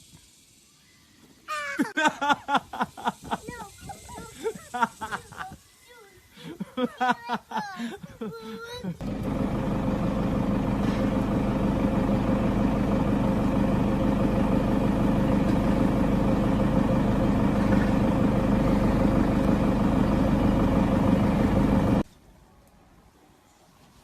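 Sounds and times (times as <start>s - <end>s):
engine humming steadily: 8.6s - 22.1s.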